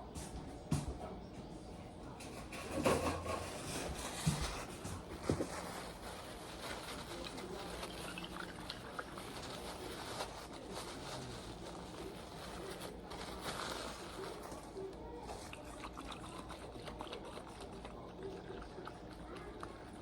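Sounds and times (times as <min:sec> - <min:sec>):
liquid trickling and pouring: 0:07.1 - 0:09.6.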